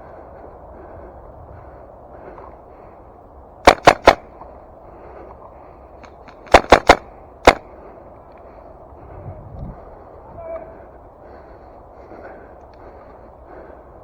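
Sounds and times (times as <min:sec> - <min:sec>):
airsoft gun shots: 0:03.6 - 0:04.3, 0:06.5 - 0:07.7.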